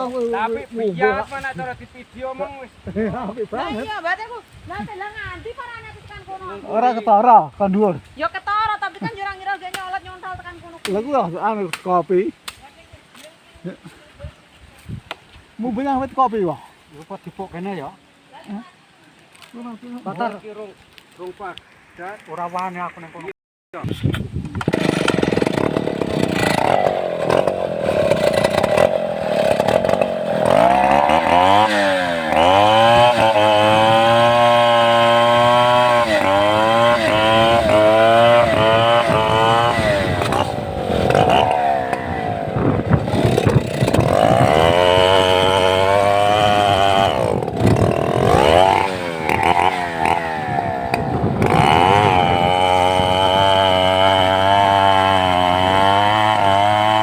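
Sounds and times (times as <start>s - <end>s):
chainsaw revving and cutting wood: 0.0s - 1.6s, 24.5s - 57.0s.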